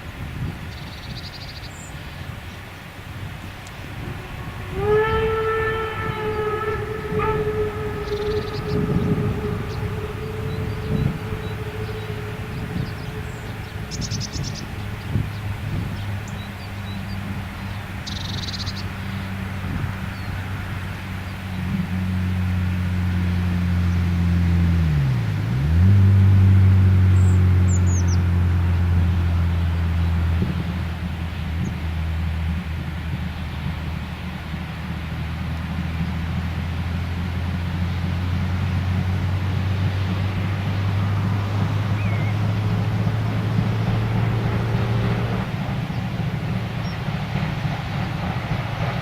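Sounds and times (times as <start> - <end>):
engine humming: 0.0 - 49.0
wind buffeting microphone: 0.0 - 49.0
low rumble: 3.0 - 49.0
bird chirps: 6.3 - 17.2.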